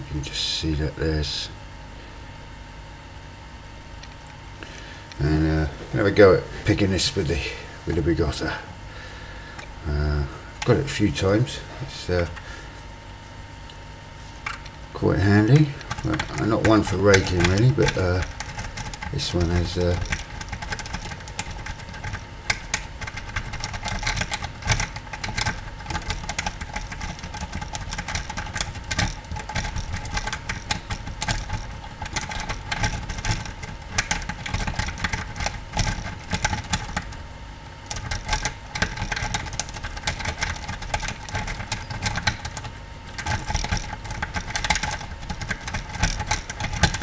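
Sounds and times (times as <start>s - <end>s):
lock pick raking in a lock: 15.8s - 37.2s, 37.8s - 47.0s.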